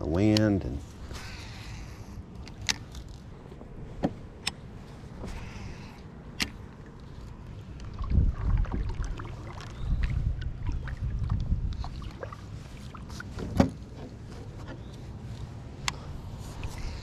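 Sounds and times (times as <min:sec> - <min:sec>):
wind buffeting microphone: 0:01.0 - 0:13.5.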